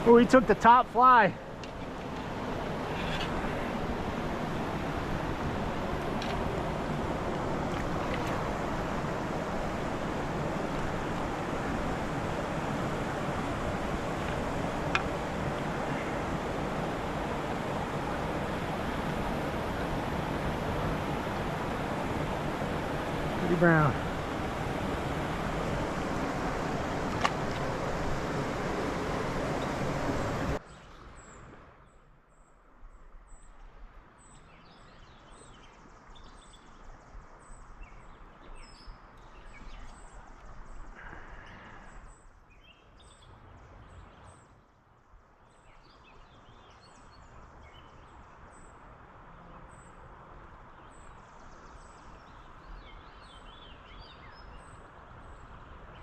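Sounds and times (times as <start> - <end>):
river water rushing: 0.0 - 30.6
birds chirping: 8.0 - 31.4.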